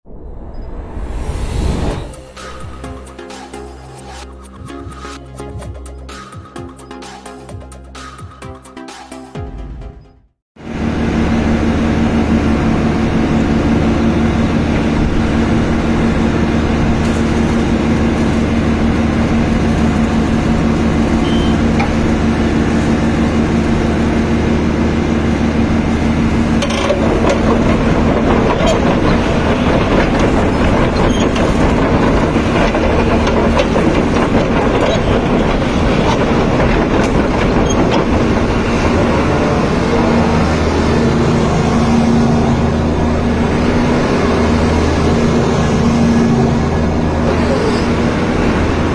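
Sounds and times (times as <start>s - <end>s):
excavator diesel engine running: 10.6s - 48.9s
rough mechanical working noise: 10.6s - 48.9s.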